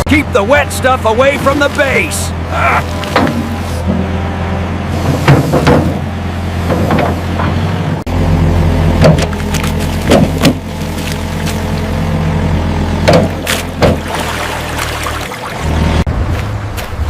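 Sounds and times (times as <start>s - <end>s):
excavator engine running: 0.0s - 17.0s
excavator digging knocks: 2.8s - 4.1s, 5.0s - 7.8s, 8.9s - 11.9s, 13.0s - 14.5s.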